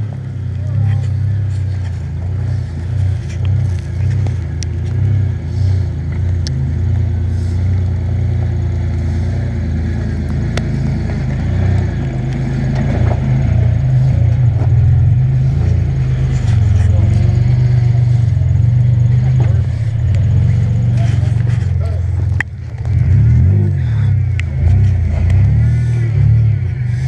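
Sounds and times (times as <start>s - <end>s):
truck engine revving under load: 0.0s - 27.0s.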